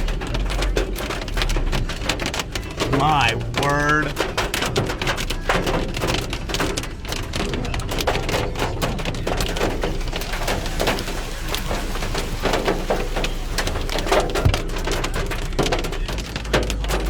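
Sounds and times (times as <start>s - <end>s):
hail and rain pelting: 0.0s - 17.0s.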